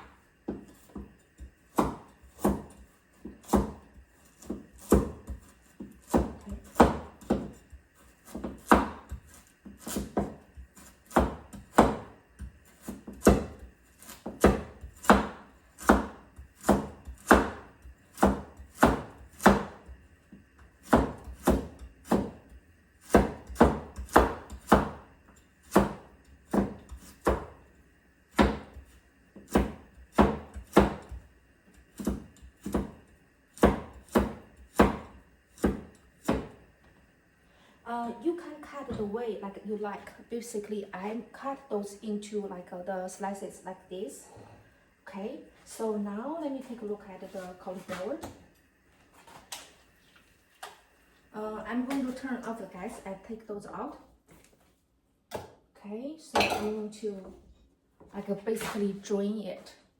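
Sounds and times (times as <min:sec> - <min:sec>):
knife chopping carrot on board: 0:00.0 - 0:20.0, 0:20.8 - 0:27.6, 0:28.3 - 0:36.6, 0:55.3 - 0:55.6.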